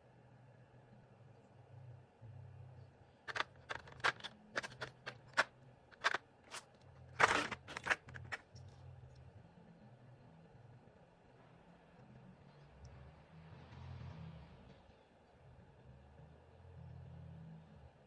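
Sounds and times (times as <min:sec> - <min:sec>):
plastic keycaps clicking: 0:03.3 - 0:06.2
keycaps scraping clatter: 0:03.3 - 0:08.7.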